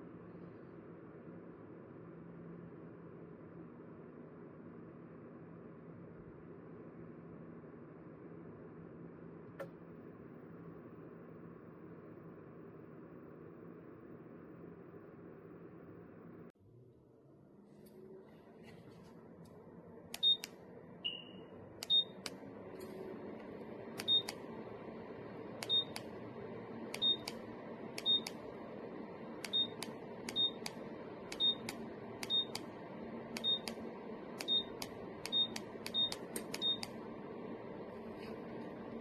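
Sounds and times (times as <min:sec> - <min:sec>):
steady fan hum: 0:18.0 - 0:39.0
lower beep: 0:20.2 - 0:22.2, 0:24.0 - 0:24.4, 0:25.6 - 0:26.0, 0:27.0 - 0:27.4, 0:31.4 - 0:32.6
button clicks with high beeps: 0:20.2 - 0:22.4, 0:24.0 - 0:24.4, 0:25.6 - 0:26.1, 0:27.0 - 0:27.4, 0:28.0 - 0:28.4, 0:29.4 - 0:32.7, 0:33.4 - 0:33.8, 0:34.4 - 0:37.0.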